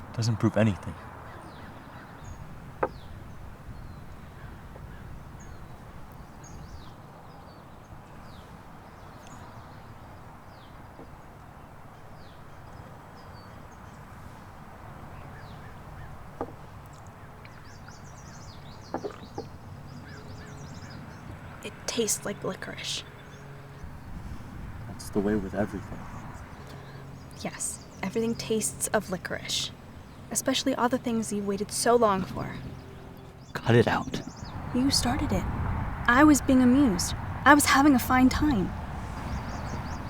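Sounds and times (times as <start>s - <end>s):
outdoor background noise: 0.0s - 40.0s
small birds chirping: 0.0s - 40.0s
sharp knocks: 2.8s - 3.1s, 16.4s - 16.6s, 18.9s - 19.5s.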